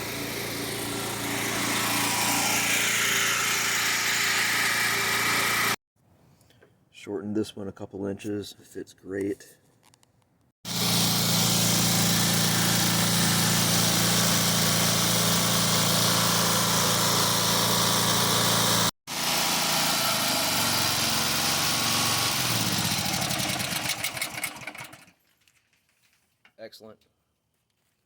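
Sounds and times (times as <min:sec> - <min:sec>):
pressure washer engine running: 0:00.0 - 0:05.8, 0:10.7 - 0:25.1.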